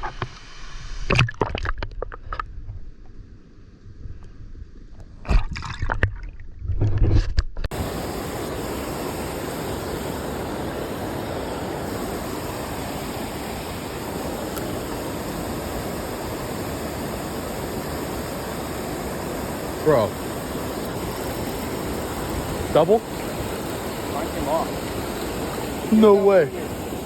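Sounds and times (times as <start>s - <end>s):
creek water running over rocks: 7.7s - 27.0s.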